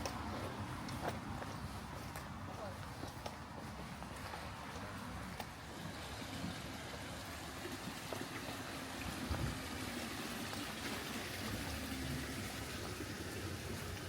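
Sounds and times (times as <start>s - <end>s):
low traffic rumble: 0.0s - 14.0s
rain on street: 5.6s - 14.0s.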